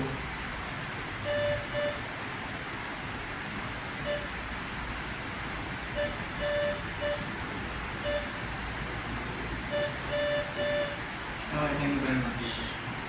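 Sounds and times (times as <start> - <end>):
morse code beeps: 1.2 - 2.0, 4.0 - 4.4, 5.9 - 7.4, 8.0 - 8.4, 9.7 - 11.0.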